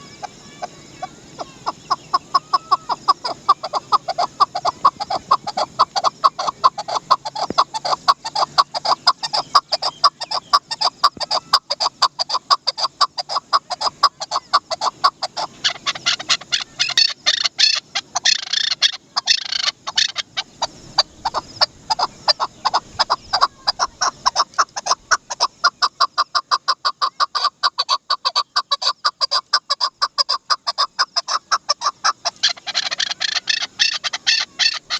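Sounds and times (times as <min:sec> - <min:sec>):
partridge clucking calls: 0:00.0 - 0:34.9.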